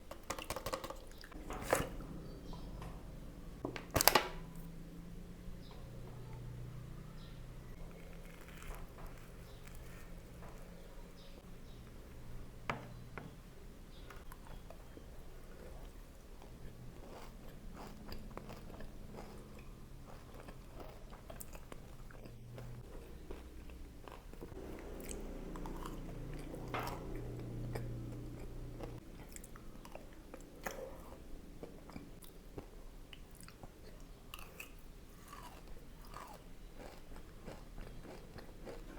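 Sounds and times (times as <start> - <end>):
low steady hum: 1.2 - 38.7
crunchy pastry biting and chewing: 7.7 - 10.7, 15.5 - 32.7, 33.4 - 38.9.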